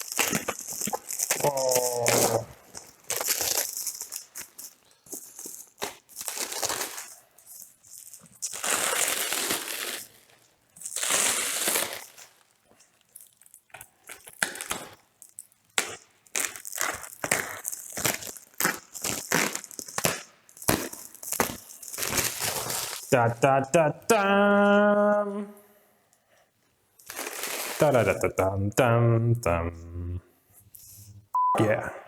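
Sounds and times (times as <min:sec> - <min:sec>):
cardboard and packing material rustling: 0:00.0 - 0:12.6, 0:16.4 - 0:23.1, 0:27.0 - 0:28.0.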